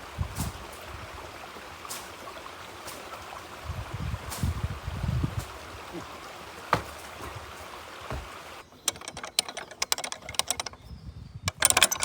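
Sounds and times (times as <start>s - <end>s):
water rushing over rocks: 0.0s - 8.6s.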